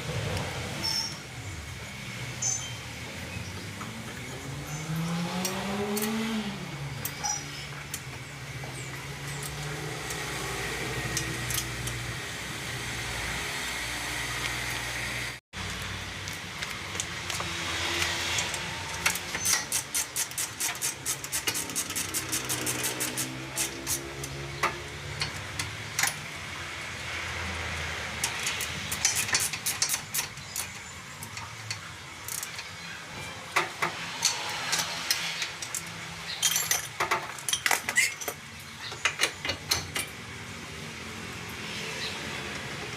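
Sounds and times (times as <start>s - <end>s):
metal tools clinking and knocking: 18.3s - 26.3s, 28.2s - 40.3s.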